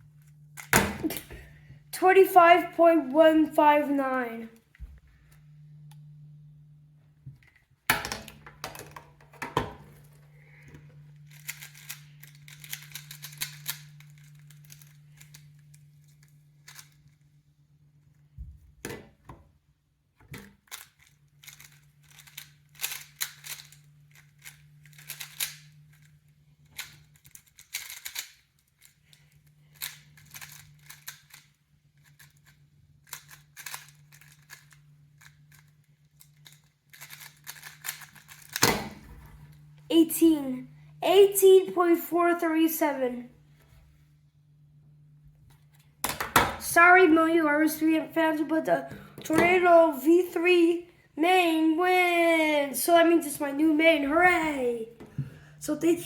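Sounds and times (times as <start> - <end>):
plastic cube clicking: 11.3 - 15.4, 20.7 - 25.6, 26.7 - 28.9, 29.7 - 31.5, 33.0 - 38.7.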